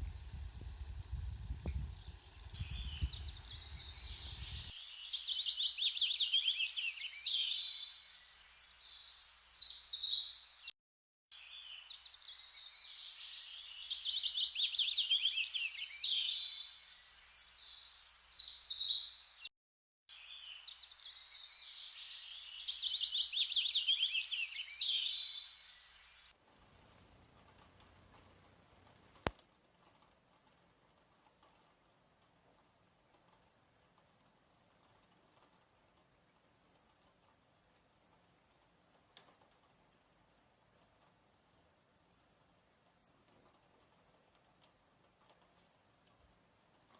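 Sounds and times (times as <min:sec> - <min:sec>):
songbird trilling and chirping: 0:00.0 - 0:10.3, 0:20.6 - 0:26.3.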